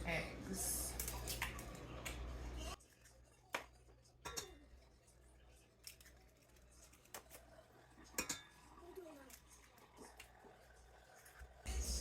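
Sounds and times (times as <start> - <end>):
eggs cracking on bowl edge: 5.8 - 7.5.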